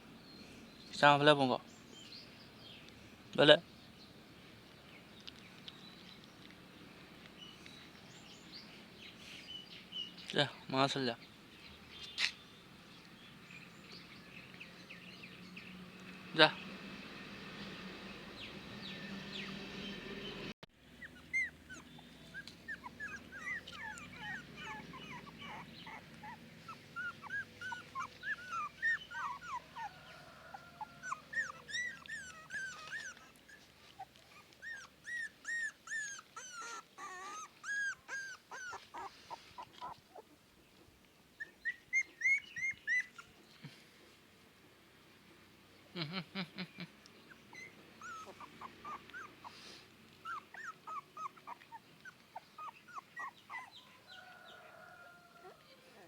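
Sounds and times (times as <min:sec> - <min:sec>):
puppies whimpering: 0:20.9 - 0:40.4, 0:41.4 - 0:43.4, 0:47.2 - 0:56.0.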